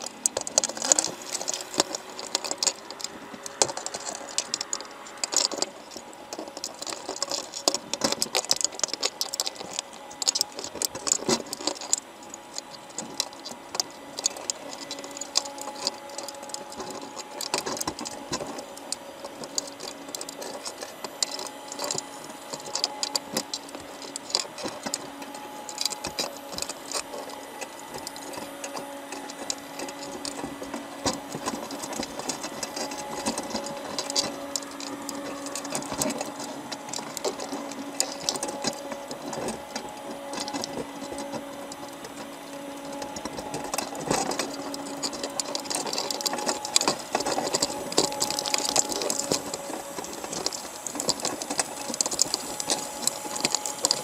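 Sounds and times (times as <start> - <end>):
machine humming: 0.0 - 54.0
rapid clicking and rattling: 0.0 - 54.0.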